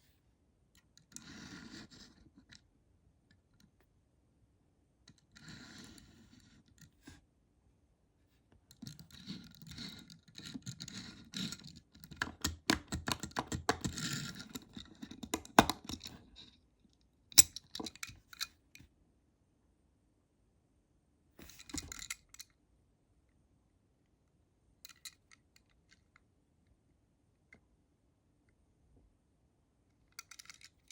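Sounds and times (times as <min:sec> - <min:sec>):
toy car clicks and taps: 0:11.5 - 0:16.1.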